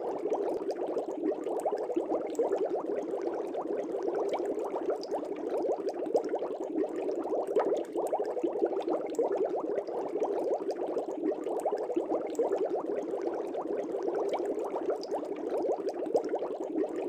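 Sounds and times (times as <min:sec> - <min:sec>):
air bubbling through aquarium water: 0:00.0 - 0:17.0.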